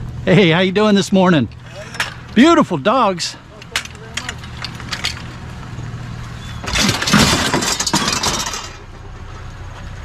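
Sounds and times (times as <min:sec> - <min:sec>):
vehicle engine idling: 0:00.0 - 0:10.0
loud clattering noise: 0:06.6 - 0:08.9.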